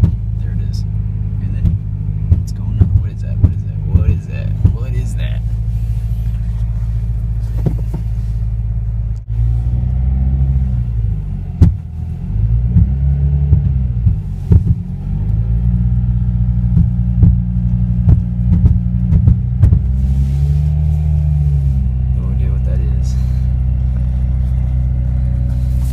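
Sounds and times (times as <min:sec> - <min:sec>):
car engine running low: 0:00.0 - 0:25.9
sharp pops from car: 0:11.6 - 0:11.9.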